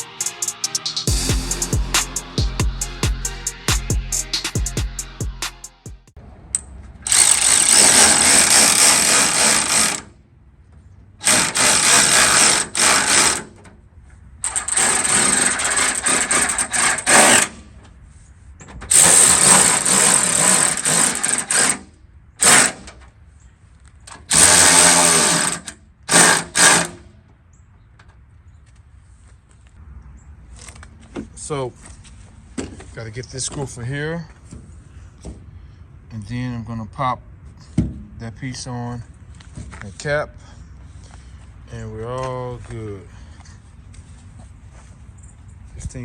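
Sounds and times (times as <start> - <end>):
power drill driving bolts: 7.0 - 10.1, 11.2 - 13.7, 14.4 - 17.7, 18.7 - 23.1, 24.1 - 27.2.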